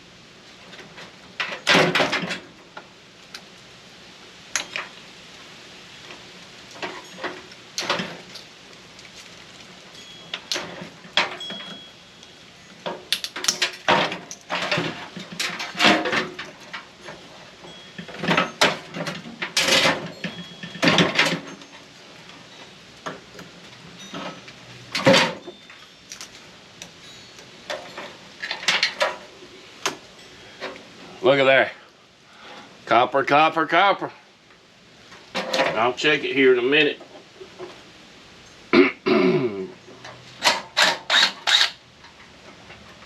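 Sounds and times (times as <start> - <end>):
metal clanks ringing: 10.0 - 12.0.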